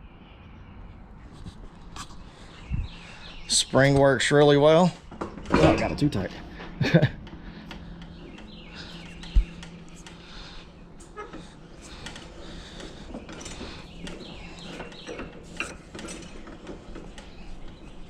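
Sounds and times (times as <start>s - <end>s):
metallic clicks and creaks of vise: 11.0s - 18.0s.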